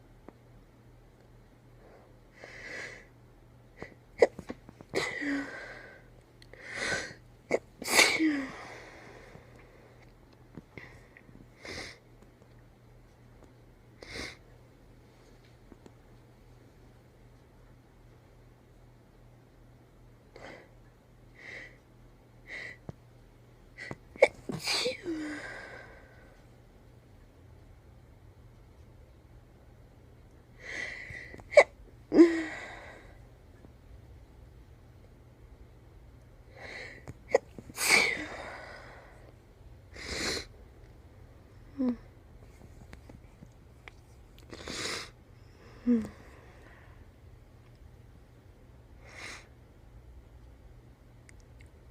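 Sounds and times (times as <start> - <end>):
woman sneezing: 7.5 - 8.6, 24.2 - 25.2, 37.3 - 38.4.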